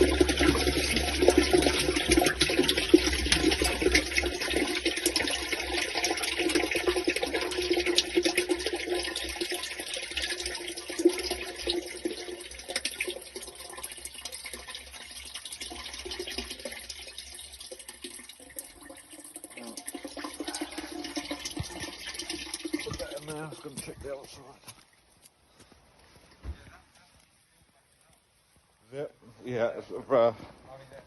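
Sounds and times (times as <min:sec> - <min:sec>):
water rushing through a drain: 0:00.0 - 0:24.2.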